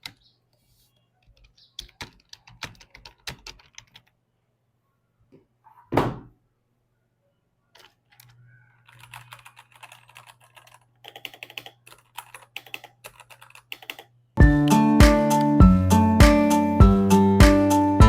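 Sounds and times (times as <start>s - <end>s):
mechanical keyboard typing: 1.2s - 4.1s, 7.8s - 14.1s
loud thump: 5.9s - 6.3s
music: 14.4s - 18.0s.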